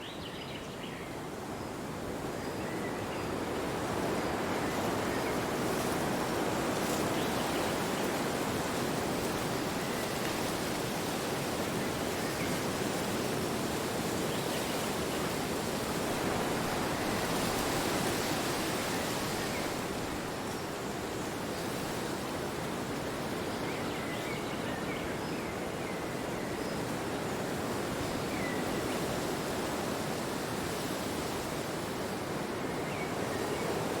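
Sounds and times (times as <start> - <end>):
wind blowing: 15.7 - 20.9.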